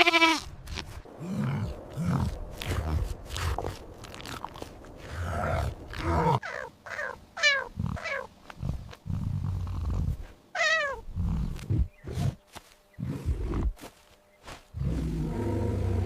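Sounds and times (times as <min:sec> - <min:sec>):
low grunting rumbles: 0:01.1 - 0:06.4, 0:14.8 - 0:16.0
animal wavering cries: 0:06.2 - 0:08.3.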